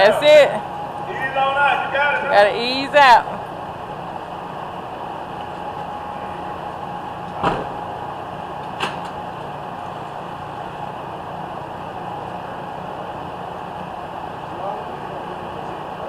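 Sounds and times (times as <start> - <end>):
steady background hum: 0.0 - 16.0
sharp knocks: 7.4 - 7.8.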